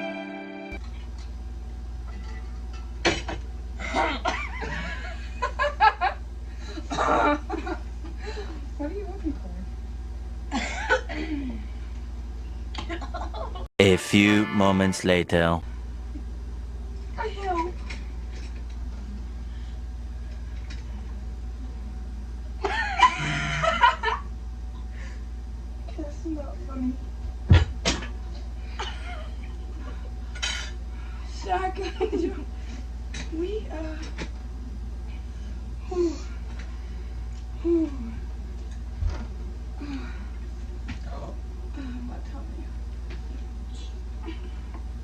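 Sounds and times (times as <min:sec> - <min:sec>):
person's voice sliding in pitch: 0:13.8 - 0:15.6.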